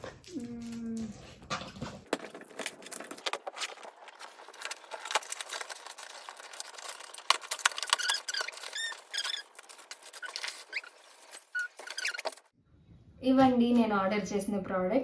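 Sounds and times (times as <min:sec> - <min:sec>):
short squeaks: 0:07.6 - 0:12.5.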